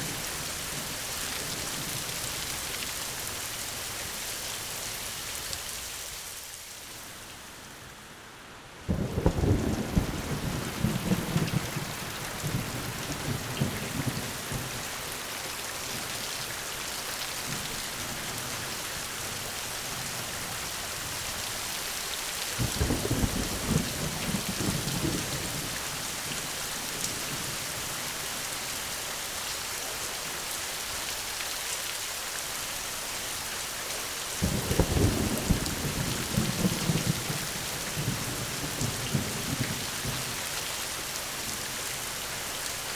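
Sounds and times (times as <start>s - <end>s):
steady rain: 0.0s - 42.9s
rolling thunder: 8.9s - 14.8s, 34.4s - 40.3s.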